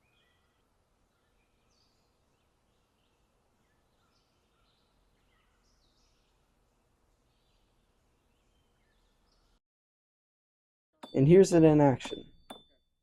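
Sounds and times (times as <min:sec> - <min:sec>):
faint bird chirps: 0:00.0 - 0:09.6.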